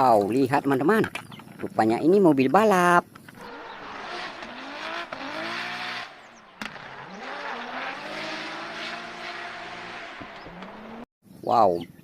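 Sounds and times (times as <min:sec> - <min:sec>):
race car engine revving: 0:03.4 - 0:11.1.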